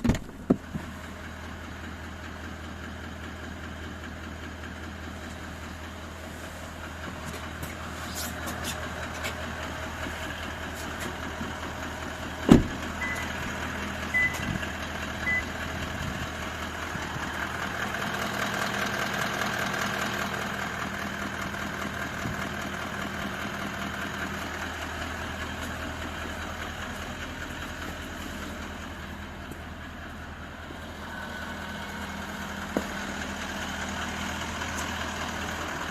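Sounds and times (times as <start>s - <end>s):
diesel engine idling: 0.1s - 35.9s
short beeps: 13.0s - 13.3s, 14.1s - 14.5s, 15.2s - 15.5s.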